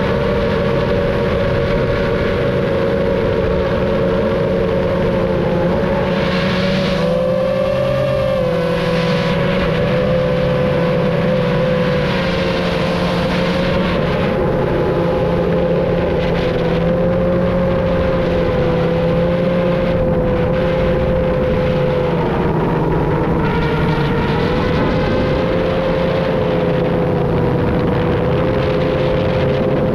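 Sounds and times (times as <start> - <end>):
rushing wind: 0.0 - 29.9.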